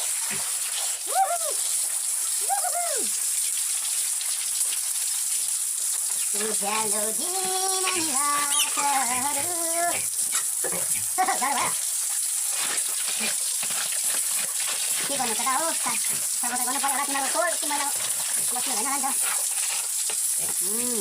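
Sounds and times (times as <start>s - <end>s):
spraying water hiss: 0.0s - 21.0s
pitched vocal calls: 6.4s - 11.8s.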